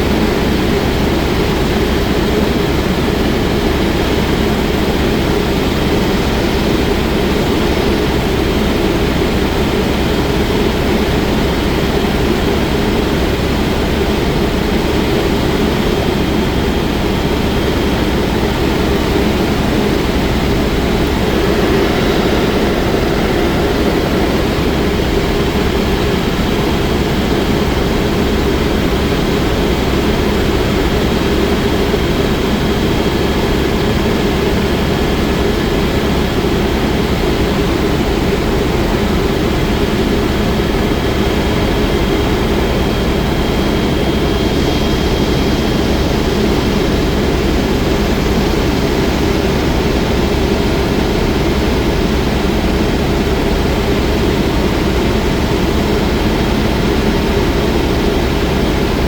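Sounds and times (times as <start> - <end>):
helicopter engine and rotor drone: 0.0 - 35.3
faint high whine: 17.8 - 31.7.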